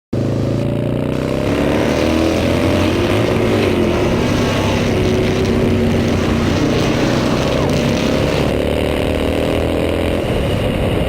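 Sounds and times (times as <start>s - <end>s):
motorcycle engine running: 0.1s - 11.0s.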